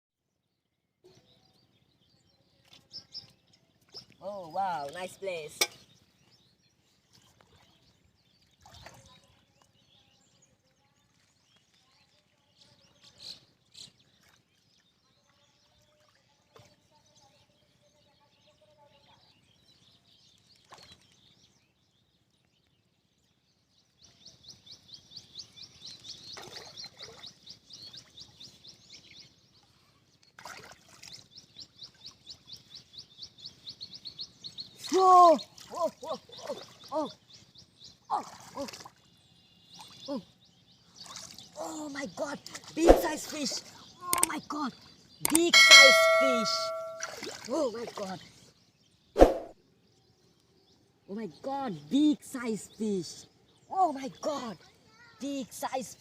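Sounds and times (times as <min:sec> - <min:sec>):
high-pitched chirping trill: 0:45.3 - 0:47.1.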